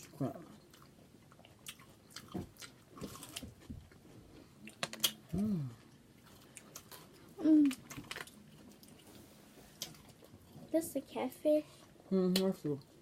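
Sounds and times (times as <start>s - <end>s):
chewing and lip smacking: 0.0s - 9.2s.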